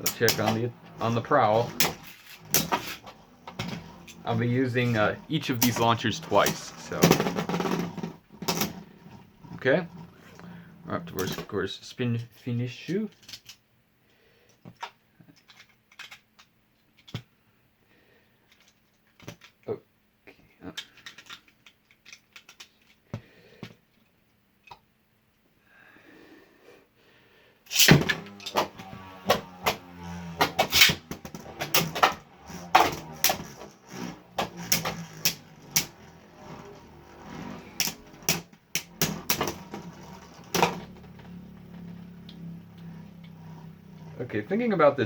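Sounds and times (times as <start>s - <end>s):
spinning tops landing with crack: 0.0s - 8.8s, 27.7s - 44.0s
spinning tops whirring: 0.0s - 11.5s, 27.7s - 45.0s
spinning tops clacking together: 27.7s - 36.2s.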